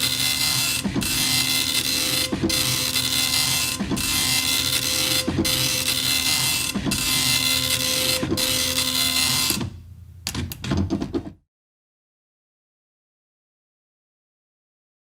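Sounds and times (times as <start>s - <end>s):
dot matrix printer printing: 0.0s - 9.7s
mechanical clicks and knocks: 0.0s - 11.4s.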